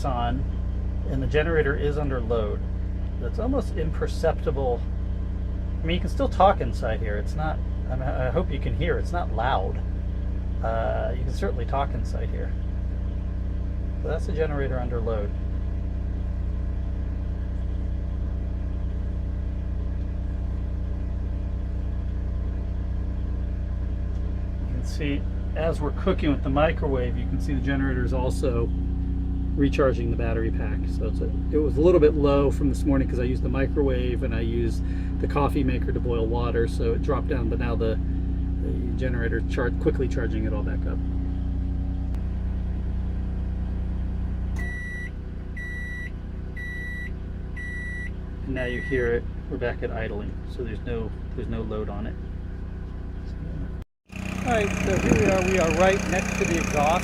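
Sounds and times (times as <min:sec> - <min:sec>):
generator humming: 0:00.0 - 0:57.0
microwave beeps: 0:44.6 - 0:49.1.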